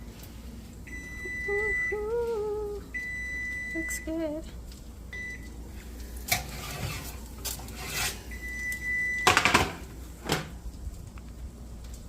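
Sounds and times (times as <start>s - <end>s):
dishes and pans clattering: 9.2s - 10.4s.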